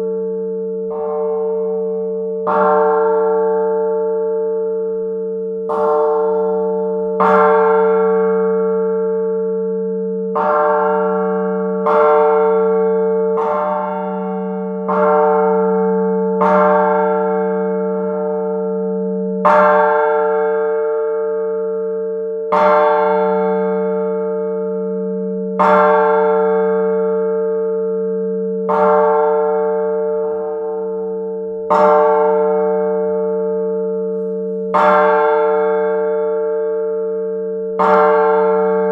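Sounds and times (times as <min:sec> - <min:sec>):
church bell tolling: 0:00.0 - 0:38.9.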